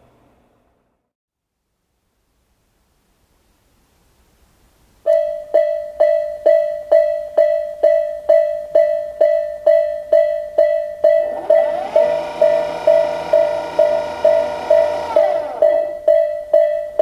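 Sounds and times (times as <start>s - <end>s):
level crossing alarm bell: 8.8s - 17.0s.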